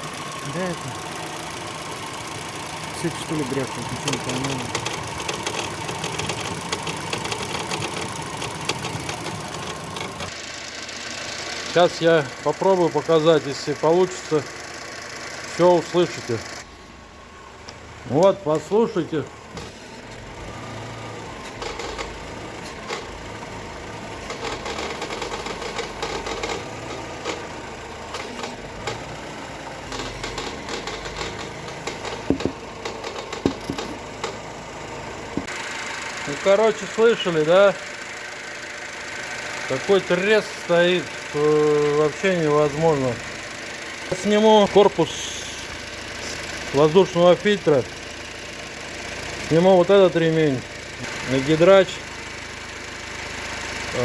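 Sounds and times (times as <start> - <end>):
car engine idling with clattering tick: 0.0 - 16.7, 17.6 - 54.0
sharp knocks: 29.9 - 34.4.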